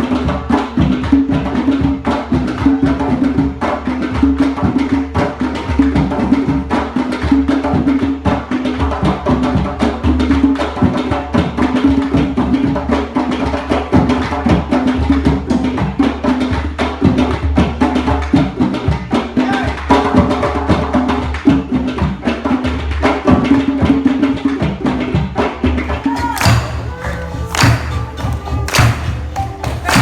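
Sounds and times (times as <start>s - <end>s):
steady low pitched notes: 25.8s - 30.0s
sharp clicking percussion strokes: 25.9s - 30.0s.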